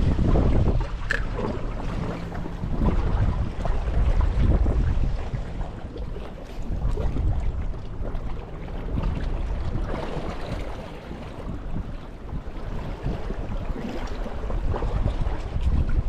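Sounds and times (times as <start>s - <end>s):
faint sea water wash: 0.0s - 16.0s
low wind rumble: 0.0s - 16.0s
wind buffeting microphone: 0.0s - 16.0s.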